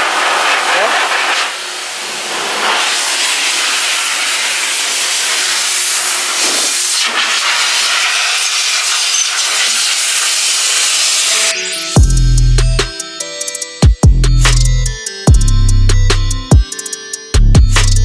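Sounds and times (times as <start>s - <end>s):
air blower rushing: 0.0s - 11.5s.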